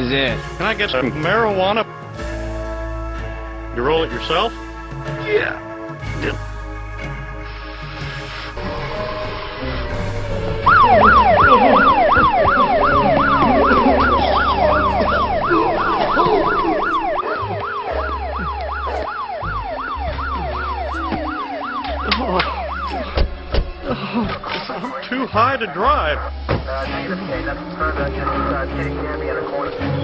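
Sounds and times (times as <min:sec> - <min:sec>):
low droning music: 0:00.0 - 0:30.0
siren yelping: 0:08.6 - 0:23.8.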